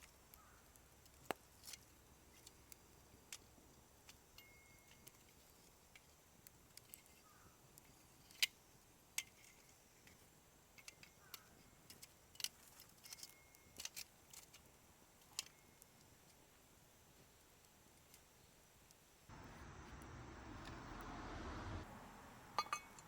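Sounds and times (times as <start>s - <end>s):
burning wood popping and snapping: 0.0s - 19.2s
wood fire crackling: 0.0s - 23.0s.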